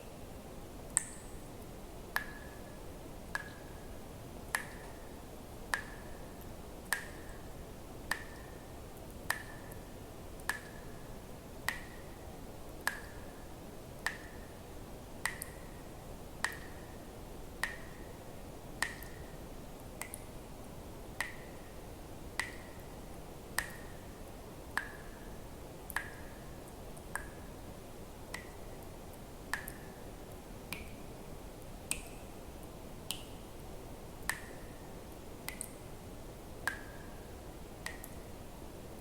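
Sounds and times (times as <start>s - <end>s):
faint steady hiss: 0.0s - 39.0s
water drops plinking into water: 0.9s - 1.4s, 2.1s - 2.7s, 3.3s - 3.8s, 4.5s - 5.0s, 5.7s - 6.1s, 8.1s - 10.9s, 11.6s - 12.2s, 12.8s - 13.2s, 14.0s - 14.5s, 15.2s - 15.7s, 16.4s - 16.8s, 17.6s - 18.0s, 18.8s - 19.3s, 20.0s - 20.3s, 22.4s - 22.8s, 23.6s - 24.0s, 24.8s - 25.2s, 25.9s - 26.4s, 27.0s - 27.5s, 28.3s - 28.8s, 29.5s - 30.0s, 30.7s - 31.0s, 31.9s - 32.3s, 33.1s - 33.4s, 34.2s - 34.7s, 35.4s - 35.8s, 36.6s - 37.2s, 37.8s - 38.3s.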